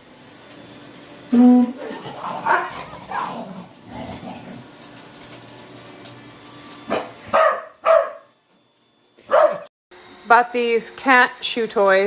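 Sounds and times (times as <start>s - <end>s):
dog barking: 2.4s - 2.8s, 6.9s - 8.3s, 9.3s - 9.7s.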